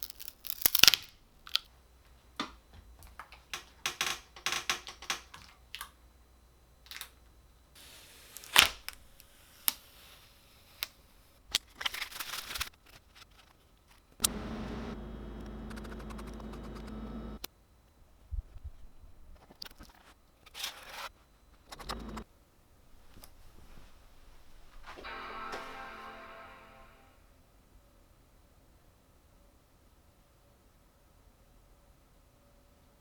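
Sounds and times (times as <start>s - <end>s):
steady hum: 14.2s - 17.5s, 21.6s - 22.2s.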